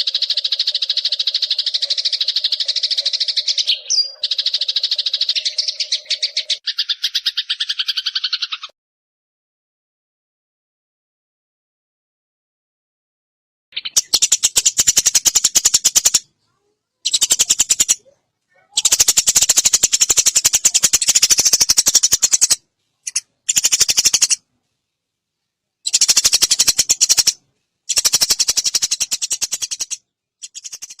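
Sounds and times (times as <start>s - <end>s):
sparrow chattering: 0.0s - 8.7s, 13.8s - 24.4s, 25.8s - 31.0s.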